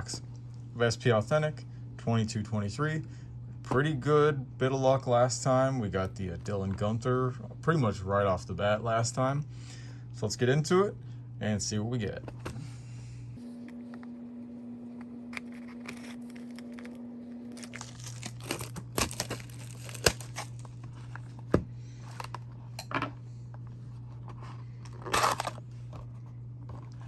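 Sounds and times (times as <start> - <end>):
faint steady hum: 0.0 - 27.0
packaging being torn and crinkled: 15.3 - 21.2, 24.8 - 25.7.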